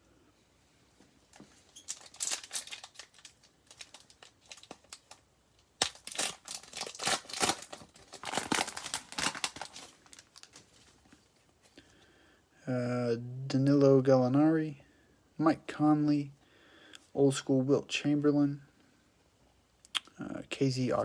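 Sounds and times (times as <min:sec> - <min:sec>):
plastic wrapper tearing and crinkling: 0:01.4 - 0:11.2.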